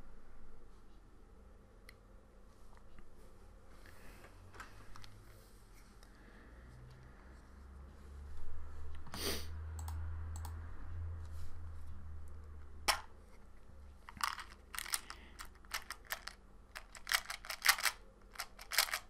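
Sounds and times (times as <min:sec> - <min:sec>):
keyboard and mouse clicking: 0:09.8 - 0:10.6, 0:14.8 - 0:19.0.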